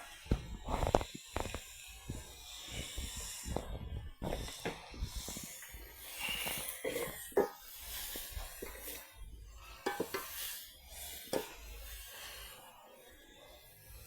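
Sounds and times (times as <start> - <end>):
dishes and utensils clinking: 9.8 - 10.4.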